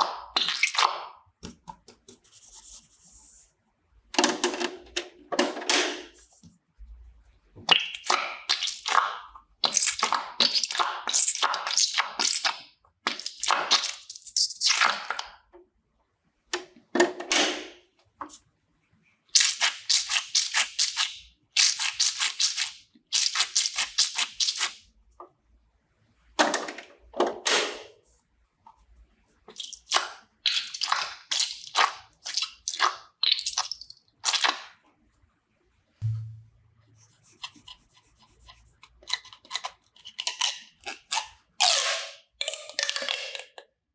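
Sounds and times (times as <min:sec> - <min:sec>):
low hum: 0:36.0 - 0:36.9.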